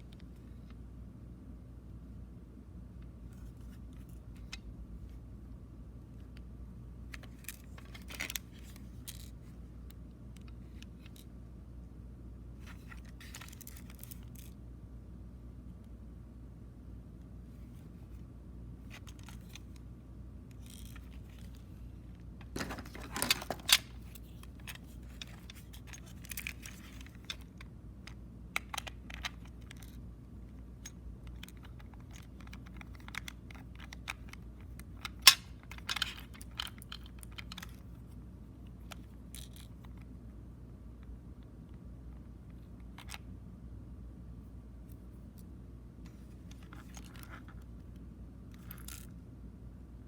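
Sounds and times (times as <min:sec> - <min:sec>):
cassette case being handled: 0:07.1 - 0:09.5, 0:20.5 - 0:30.0.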